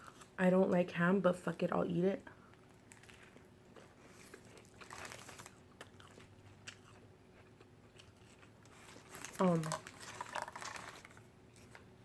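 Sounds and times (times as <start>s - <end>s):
faint biting and chewing: 2.4s - 11.9s.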